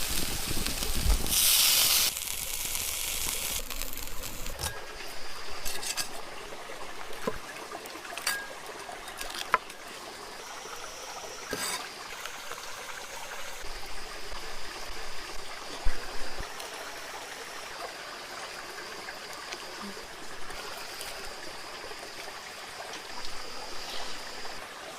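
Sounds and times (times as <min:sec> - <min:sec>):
water trickling: 0:02.2 - 0:24.9.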